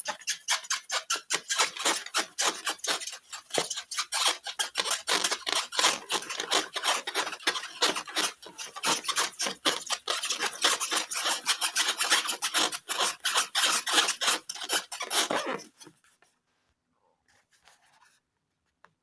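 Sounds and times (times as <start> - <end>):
rapid scratchy rubbing strokes: 0.0 - 15.8.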